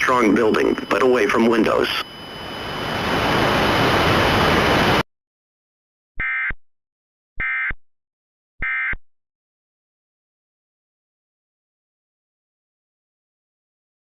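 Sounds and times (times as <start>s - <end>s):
buzzy digital data tones: 0.0s - 5.0s
static hiss: 0.0s - 5.0s.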